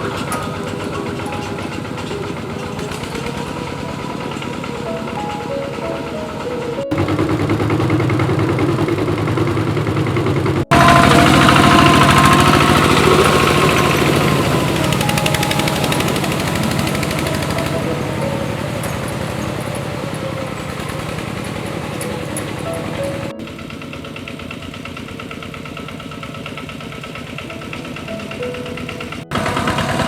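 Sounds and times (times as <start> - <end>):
small engine running: 0.0 - 30.0.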